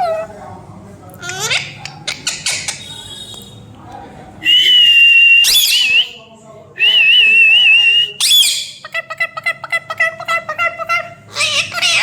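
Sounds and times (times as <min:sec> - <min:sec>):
parrot chattering notes: 0:01.2 - 0:03.1, 0:08.2 - 0:12.0
parrot whistling: 0:04.4 - 0:06.2, 0:06.9 - 0:08.9
parrot screeching: 0:05.4 - 0:06.0, 0:08.2 - 0:12.0.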